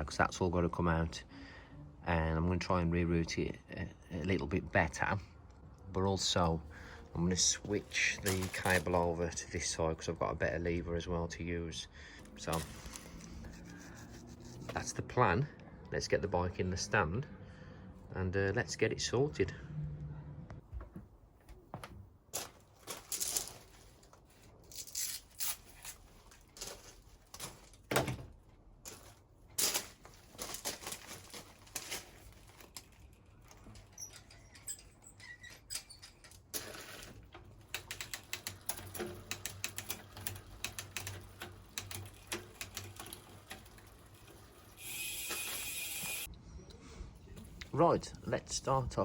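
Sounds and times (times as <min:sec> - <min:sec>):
bike being handled: 0:06.8 - 0:09.2, 0:12.2 - 0:14.9, 0:20.6 - 0:46.3.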